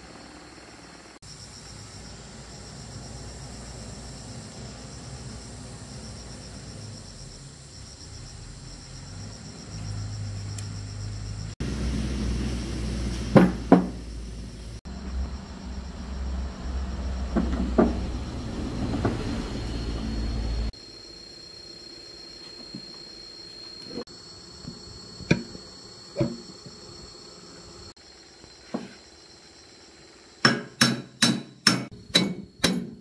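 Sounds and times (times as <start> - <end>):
low mechanical hum: 0.0 - 33.0
sharp knocks: 13.3 - 14.0.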